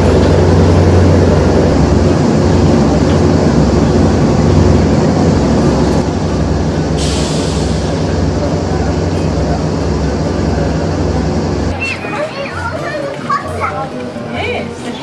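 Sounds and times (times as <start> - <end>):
vehicle engine droning: 0.0 - 11.8
burst of hiss: 7.0 - 8.0.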